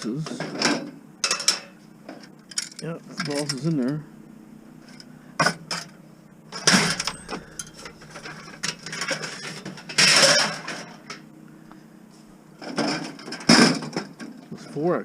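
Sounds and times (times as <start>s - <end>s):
scrap metal clattering and scraping: 6.5s - 11.2s.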